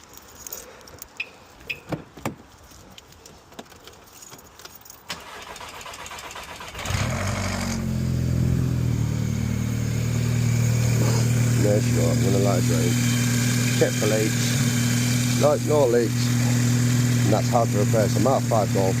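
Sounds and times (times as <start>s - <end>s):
car engine cranking and idling: 5.1s - 19.0s.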